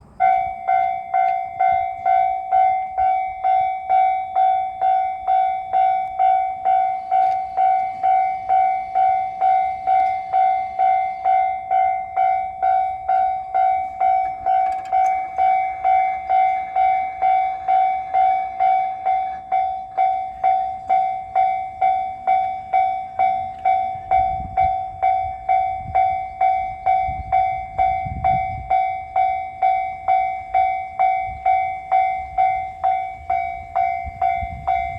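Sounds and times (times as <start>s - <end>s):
electric train rumbling past: 0.0s - 34.9s
level-crossing electronic bell dinging: 0.0s - 34.9s.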